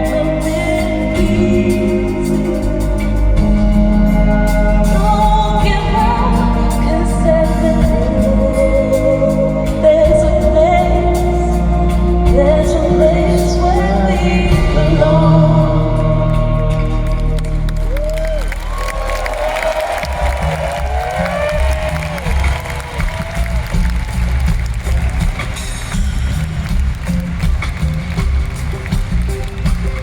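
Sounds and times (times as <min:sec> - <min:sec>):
person singing wordless melody: 0:00.0 - 0:17.7
steady bass: 0:00.0 - 0:30.0.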